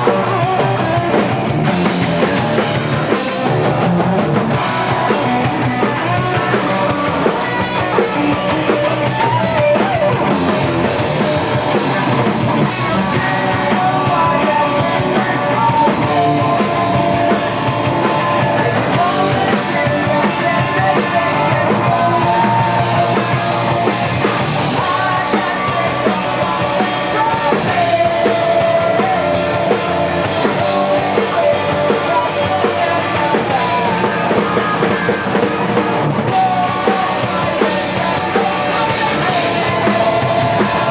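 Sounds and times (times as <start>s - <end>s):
bass guitar: 0.0s - 40.9s
drum kit: 0.0s - 40.9s
electric guitar: 0.0s - 40.9s.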